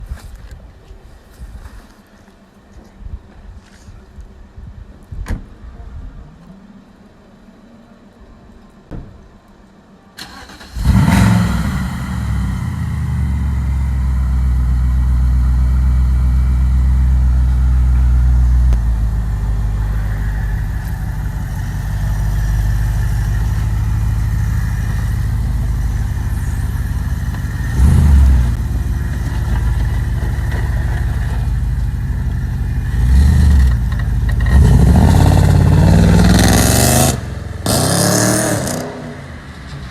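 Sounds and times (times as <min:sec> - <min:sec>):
engine revving: 0:10.2 - 0:39.4
car engine starting and idling: 0:10.2 - 0:39.9.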